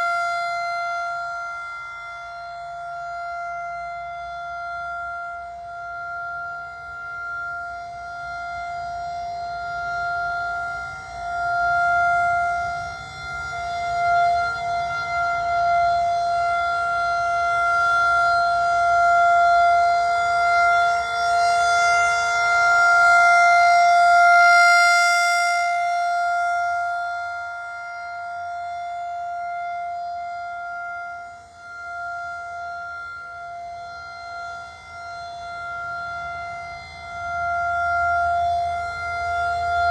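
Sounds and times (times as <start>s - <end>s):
rotating warning siren: 0.0s - 39.9s.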